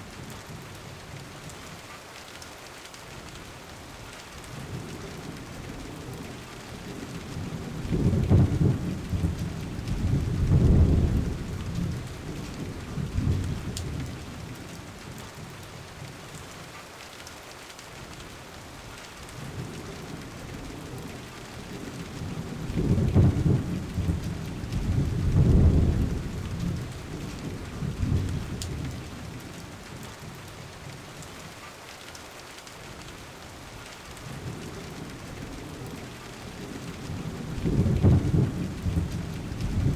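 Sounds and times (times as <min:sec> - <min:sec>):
steady rain hiss: 0:00.0 - 0:39.9
low rolls of thunder: 0:04.5 - 0:15.1, 0:19.3 - 0:30.0, 0:34.2 - 0:39.9.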